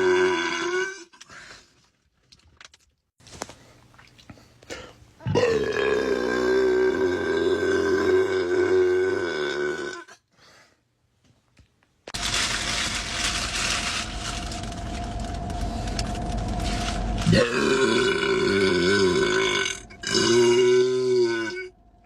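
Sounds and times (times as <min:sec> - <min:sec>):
long wavering burp: 0:00.0 - 0:01.1, 0:05.2 - 0:10.2, 0:17.2 - 0:21.8
rough drawn-out noisy sound: 0:12.2 - 0:22.0.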